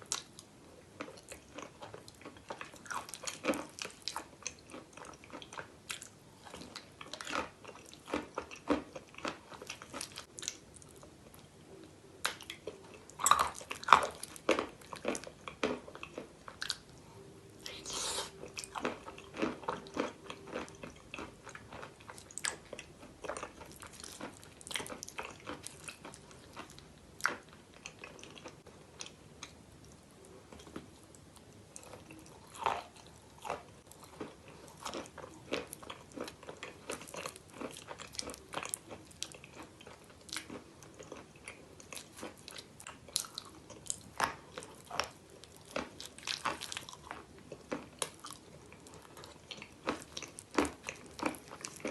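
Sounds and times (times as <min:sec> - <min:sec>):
person chewing crunchy chalk: 0:17.6 - 0:28.5.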